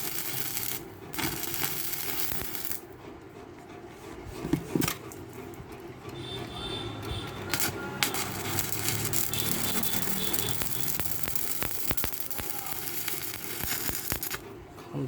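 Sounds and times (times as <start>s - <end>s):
welding arc crackling hiss: 0.0s - 2.9s, 7.5s - 14.4s.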